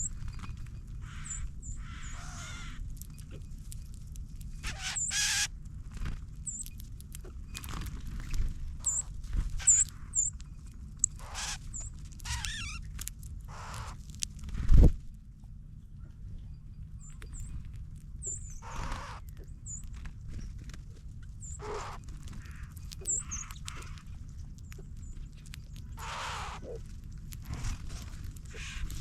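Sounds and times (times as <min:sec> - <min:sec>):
birds chipping: 0:00.0 - 0:03.8, 0:04.4 - 0:14.2, 0:16.4 - 0:29.0
raspy bird calls: 0:01.0 - 0:02.8, 0:04.6 - 0:05.5, 0:08.8 - 0:10.4, 0:11.0 - 0:12.9, 0:13.5 - 0:14.0, 0:18.2 - 0:19.9, 0:21.4 - 0:24.8, 0:25.9 - 0:26.9, 0:28.4 - 0:29.0.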